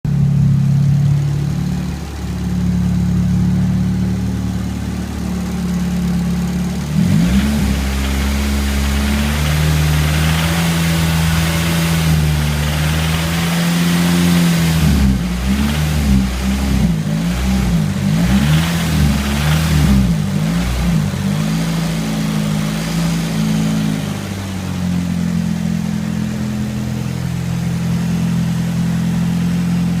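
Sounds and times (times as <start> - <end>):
car engine idling and revving: 0.0 - 30.0
engine rattling and knocking: 0.1 - 21.3.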